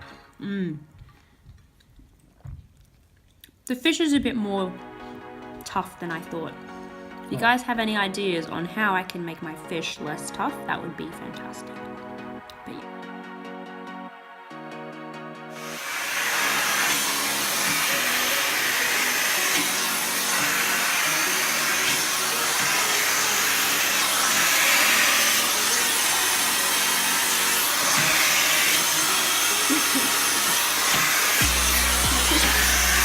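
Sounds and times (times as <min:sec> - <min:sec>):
background music: 0:00.0 - 0:00.9, 0:03.8 - 0:33.0
appliance air rushing: 0:15.6 - 0:33.0.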